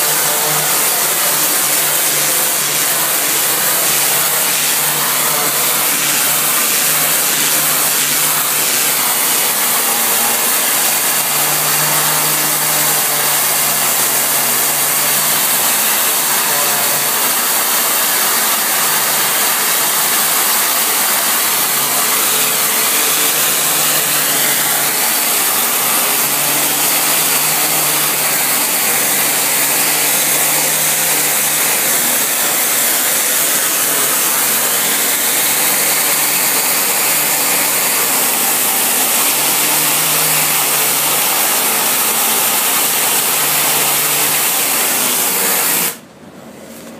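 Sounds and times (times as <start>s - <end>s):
pressure washer jet hissing: 0.0s - 46.0s
pressure washer motor hum: 0.0s - 46.9s.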